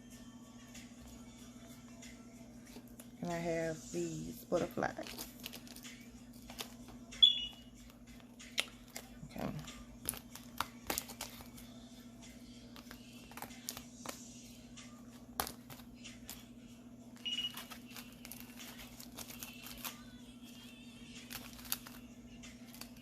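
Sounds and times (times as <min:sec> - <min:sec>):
steady low hum: 0:00.0 - 0:23.0
plastic packets clicking and crinkling: 0:04.9 - 0:06.9, 0:10.0 - 0:11.6, 0:12.8 - 0:14.2, 0:15.4 - 0:16.4, 0:17.2 - 0:20.2, 0:21.2 - 0:23.0.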